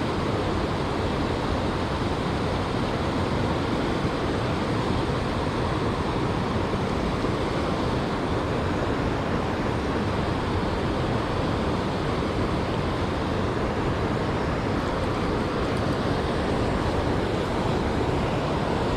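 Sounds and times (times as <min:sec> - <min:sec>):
rushing river water: 0:00.0 - 0:18.9.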